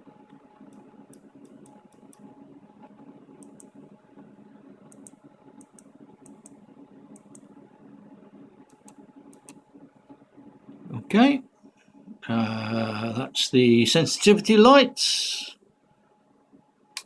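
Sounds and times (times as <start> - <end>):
mouse buttons clicking: 4.9 - 7.5, 8.7 - 9.6.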